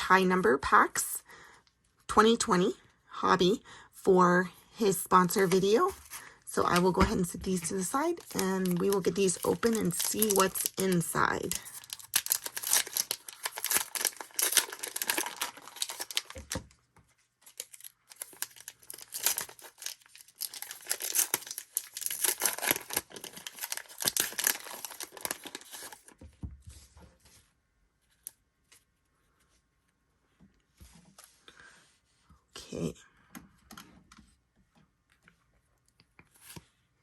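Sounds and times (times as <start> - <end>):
foil wrappers tearing and crinkling: 8.1 - 16.6, 17.4 - 26.1.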